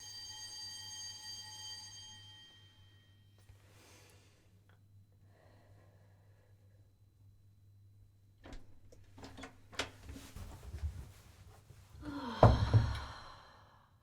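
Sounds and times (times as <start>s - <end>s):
faint bell-like chime: 0.0s - 3.5s.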